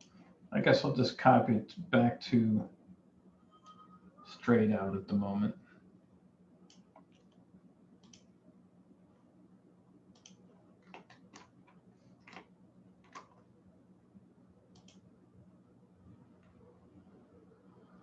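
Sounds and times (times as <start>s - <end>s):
low steady hum: 0.0s - 18.0s
computer mouse clicks: 6.6s - 7.4s, 8.0s - 8.3s, 10.1s - 13.4s, 14.7s - 15.0s.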